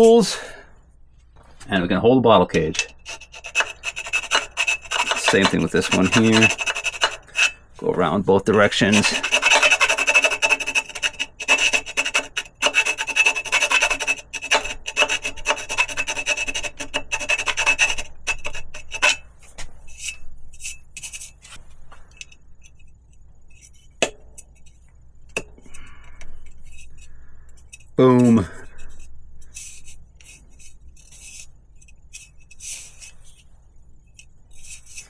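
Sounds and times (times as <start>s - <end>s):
hand file rasping metal: 2.8s - 19.3s.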